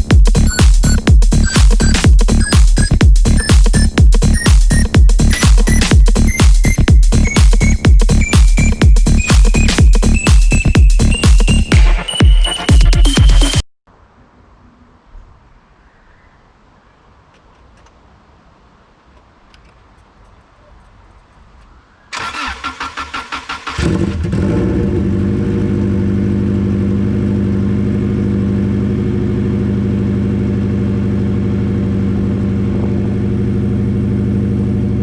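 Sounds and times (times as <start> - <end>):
starter cranking engine: 22.2 - 24.8.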